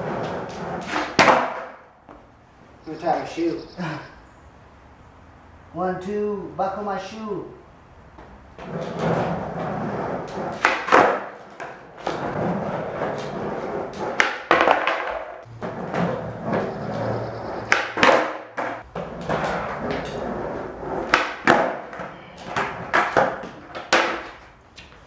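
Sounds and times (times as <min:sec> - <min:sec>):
skateboard tail popping and landing: 0:00.0 - 0:02.3, 0:08.2 - 0:25.0
skateboard wheels rolling on concrete: 0:00.0 - 0:25.0.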